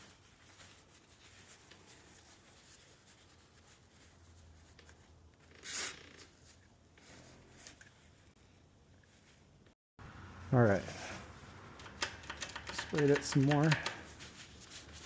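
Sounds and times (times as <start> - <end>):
faint handling rustles: 0.0 - 5.3.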